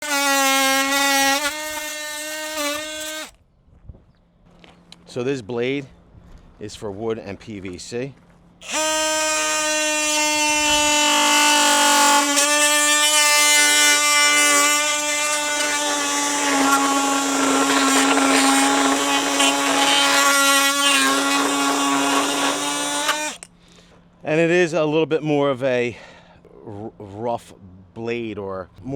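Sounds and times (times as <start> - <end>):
blade rasping as it cuts: 0.0 - 3.3, 8.6 - 23.4
oscillating multi-tool whine: 0.0 - 3.3, 8.6 - 23.5.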